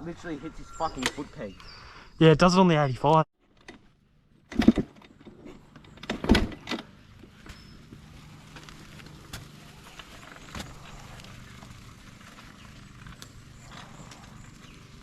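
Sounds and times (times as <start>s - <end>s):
dirt bike kick-start clunk: 3.5s - 7.9s.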